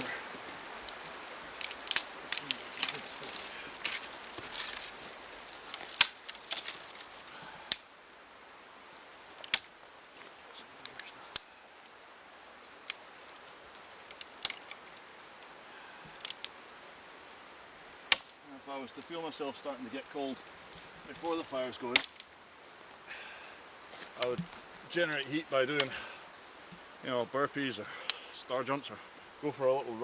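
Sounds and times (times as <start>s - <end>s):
sticks snapping: 0.8s - 7.9s, 9.4s - 10.2s, 10.8s - 11.9s, 12.8s - 15.2s, 16.1s - 16.6s, 18.0s - 18.4s, 21.3s - 22.3s, 27.9s - 28.3s.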